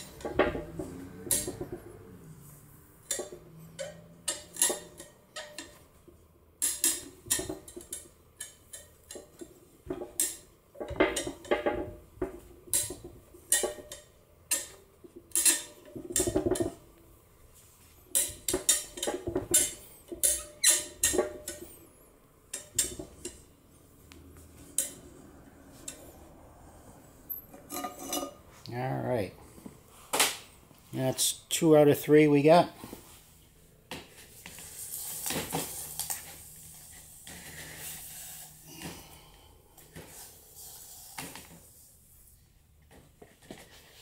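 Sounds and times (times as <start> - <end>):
metal tools clanking: 27.3 - 28.5.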